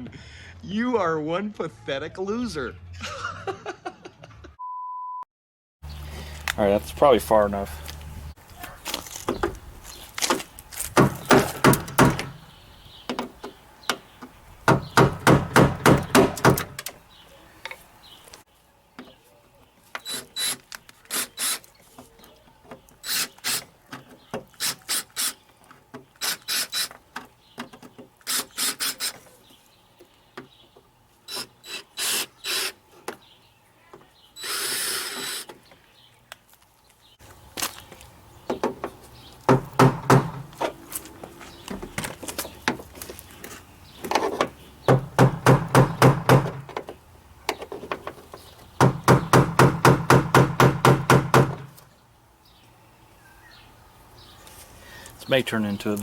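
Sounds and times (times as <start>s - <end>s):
power drill drilling rivets: 19.9s - 21.7s, 23.0s - 25.4s, 26.1s - 27.3s, 28.2s - 29.3s, 31.3s - 32.8s, 34.4s - 35.6s.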